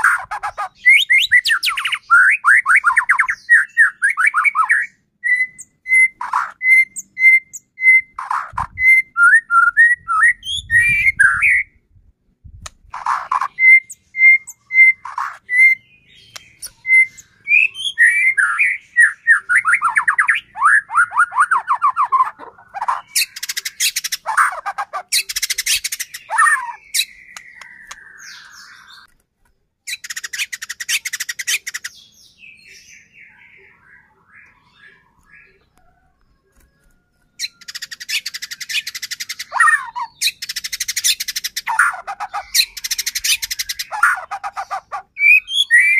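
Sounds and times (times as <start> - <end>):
bird singing whistled notes: 0.8 - 11.8, 13.3 - 22.2, 25.2 - 29.1, 37.0 - 44.3, 45.2 - 45.9.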